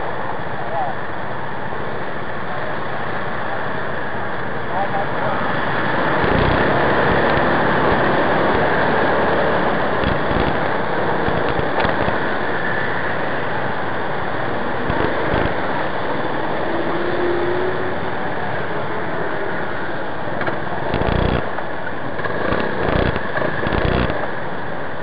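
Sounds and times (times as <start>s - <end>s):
traffic: 0.0s - 25.0s
motorcycle engine running: 6.2s - 9.3s, 9.9s - 12.2s, 14.9s - 15.6s, 20.8s - 21.5s, 22.2s - 24.2s.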